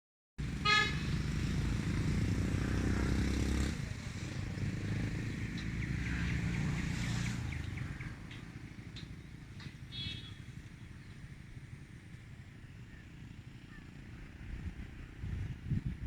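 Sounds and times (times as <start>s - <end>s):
vehicle passing: 0.4s - 15.6s
vehicle engine running: 0.4s - 16.0s.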